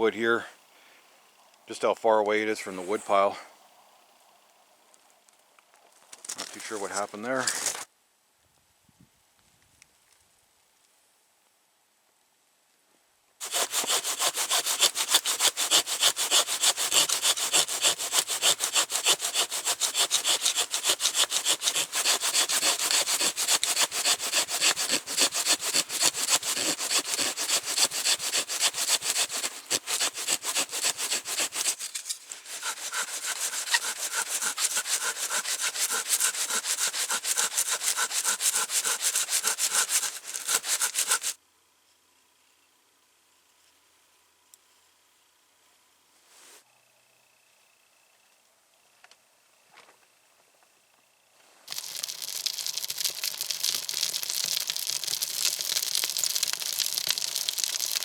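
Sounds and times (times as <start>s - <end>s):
hand saw cutting wood: 13.4s - 41.4s, 51.7s - 58.0s.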